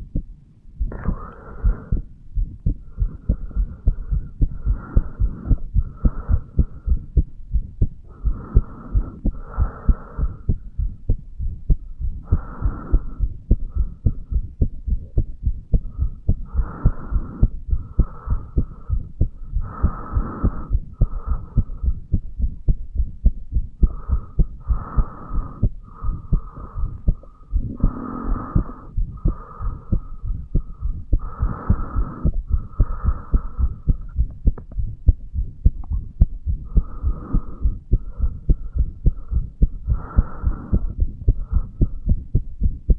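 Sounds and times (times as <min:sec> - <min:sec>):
heart beating: 0:00.0 - 0:42.9.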